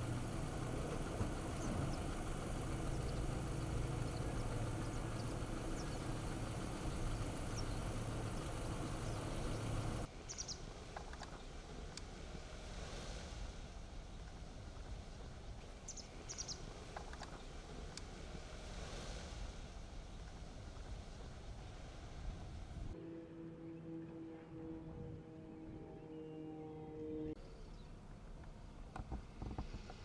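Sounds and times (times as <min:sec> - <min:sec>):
low engine hum: 0:00.0 - 0:30.0
open-air ambience: 0:00.0 - 0:30.0
bird chirps: 0:04.0 - 0:10.6, 0:15.5 - 0:16.7.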